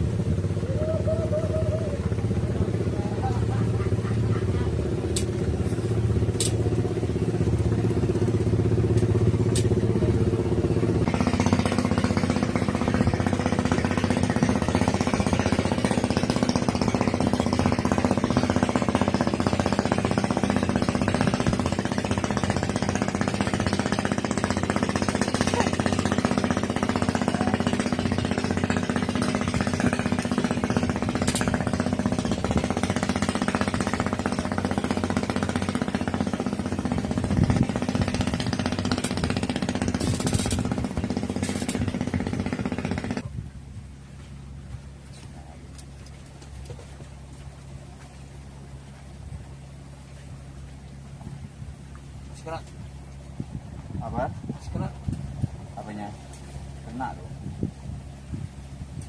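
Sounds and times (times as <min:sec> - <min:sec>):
small engine running: 0:00.0 - 0:43.4.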